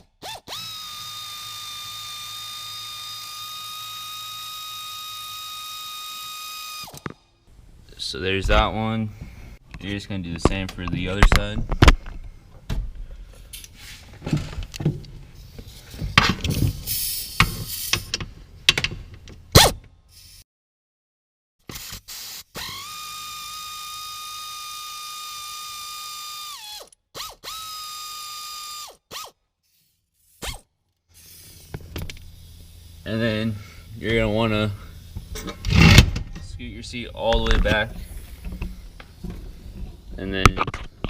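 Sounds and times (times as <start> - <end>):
air ratchet whining: 0.0 - 7.1, 21.7 - 36.5, 37.2 - 41.0
tool handling clicks and knocks: 17.4 - 19.5, 35.1 - 36.6, 37.2 - 41.0.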